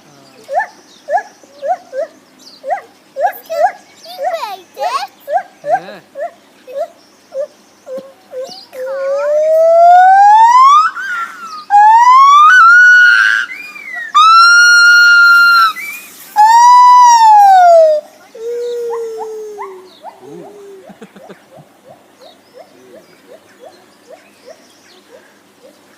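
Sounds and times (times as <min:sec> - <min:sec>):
gibbon calling: 0:00.3 - 0:04.5, 0:05.1 - 0:25.8.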